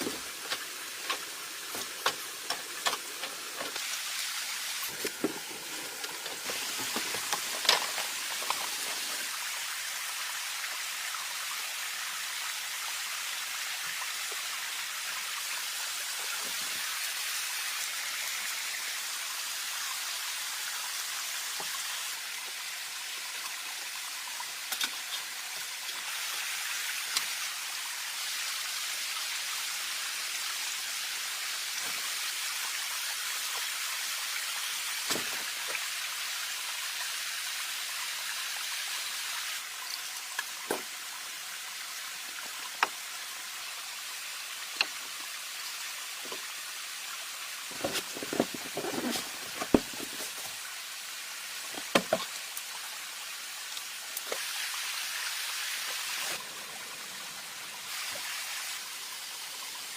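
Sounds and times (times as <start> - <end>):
flowing water rushing: 0.0 - 59.9.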